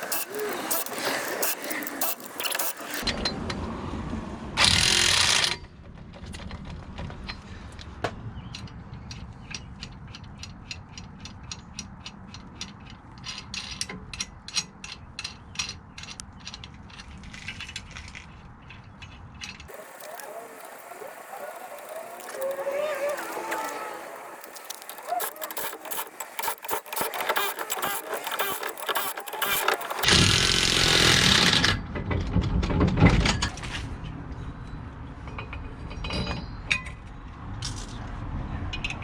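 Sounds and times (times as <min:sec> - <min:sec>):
ratchet wrench clicking: 0:00.0 - 0:03.0, 0:19.4 - 0:31.8.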